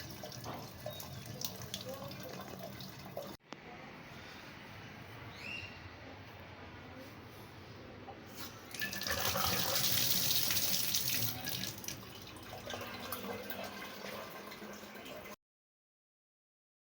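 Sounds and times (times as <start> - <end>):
water running from a tap: 0.0 - 3.4, 8.7 - 15.4.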